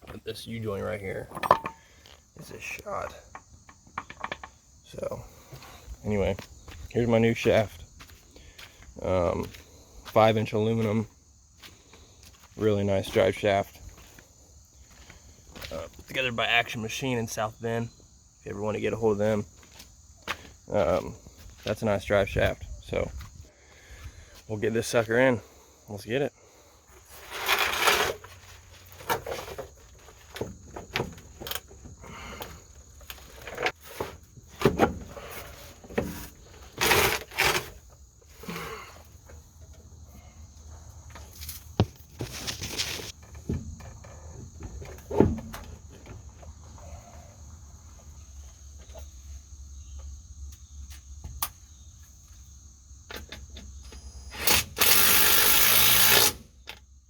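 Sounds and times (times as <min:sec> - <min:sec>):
metal tools knocking and clicking: 0:01.3 - 0:01.8.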